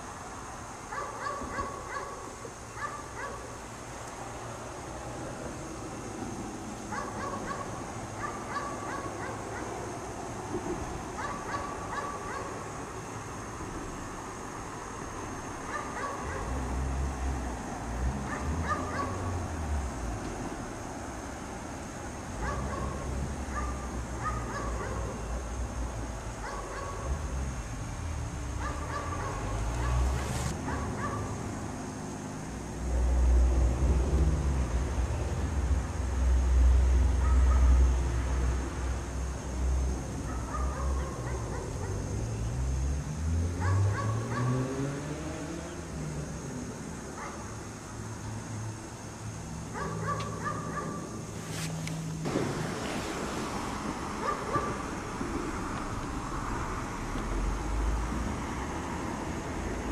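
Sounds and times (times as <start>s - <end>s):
dog barking: 0.9s - 3.5s, 6.9s - 9.8s, 11.2s - 12.6s, 15.7s - 16.6s, 18.2s - 19.3s, 22.4s - 25.2s, 26.4s - 27.2s, 28.6s - 31.3s, 37.2s - 37.8s, 40.2s - 42.0s, 43.6s - 44.6s, 47.2s - 47.5s, 49.7s - 51.1s, 54.2s - 54.8s
low vehicle rumble: 13.4s - 49.9s.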